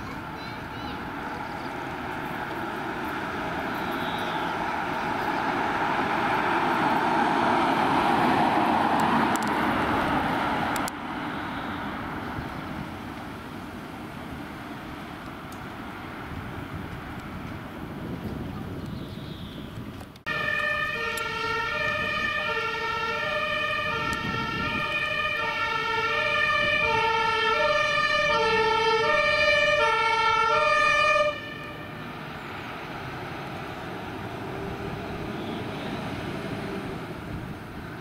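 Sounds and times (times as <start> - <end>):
vehicle engine noise: 0.0 - 38.0
two-tone fire engine siren: 1.6 - 12.1, 20.3 - 32.2.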